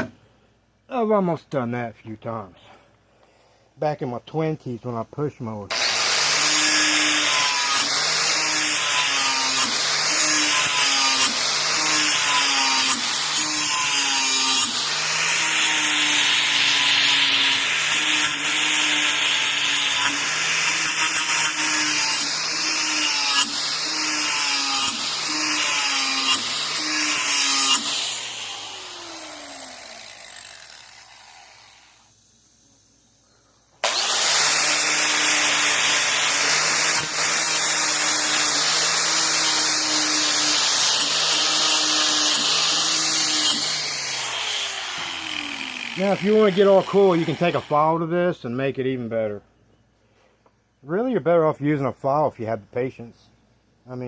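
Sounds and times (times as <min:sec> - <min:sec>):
power tool grinding steel blade: 0:05.7 - 0:33.2, 0:33.8 - 0:48.0.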